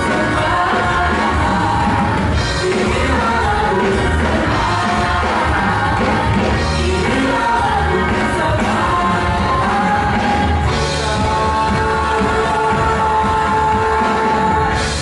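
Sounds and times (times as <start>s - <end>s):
group singing: 0.0s - 15.0s
pop-rock band playing: 0.0s - 15.0s.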